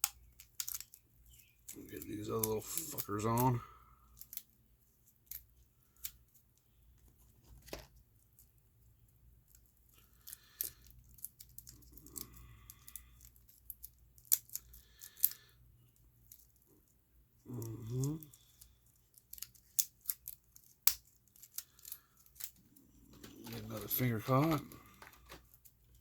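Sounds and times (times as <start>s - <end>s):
small tools clicking and scraping: 0.0s - 4.5s, 9.4s - 16.9s, 17.5s - 26.0s.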